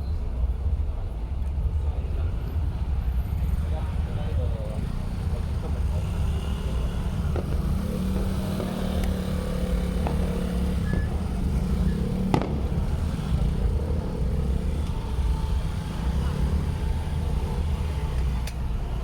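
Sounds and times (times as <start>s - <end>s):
low vehicle rumble: 0.0s - 19.0s
firecracker pops: 7.2s - 11.4s, 12.2s - 13.4s.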